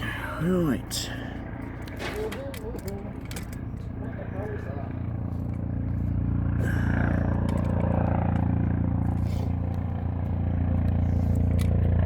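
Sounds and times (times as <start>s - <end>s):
low mechanical hum: 0.0s - 12.0s
clicks and clatter of handling: 1.6s - 4.0s, 7.2s - 9.8s, 10.8s - 11.8s.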